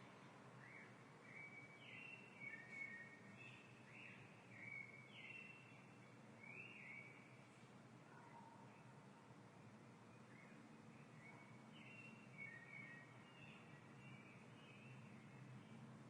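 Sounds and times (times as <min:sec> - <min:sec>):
birds chirping: 0:10.0 - 0:15.9.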